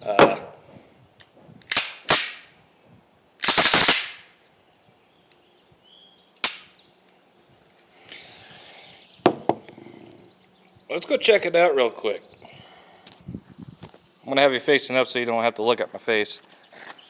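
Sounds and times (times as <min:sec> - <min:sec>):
handgun shots: 0:01.7 - 0:02.5, 0:03.4 - 0:04.3, 0:06.4 - 0:06.7.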